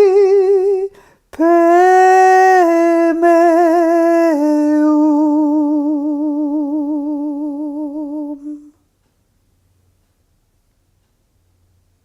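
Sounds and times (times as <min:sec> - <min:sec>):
person chanting: 0:00.0 - 0:08.8.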